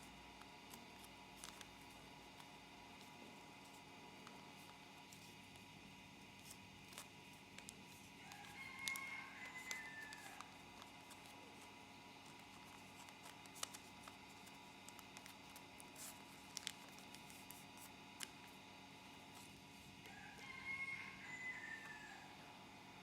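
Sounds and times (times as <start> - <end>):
paper rustling and folding: 0.0 - 20.6
rooster crowing faintly: 8.0 - 11.6, 20.0 - 23.0.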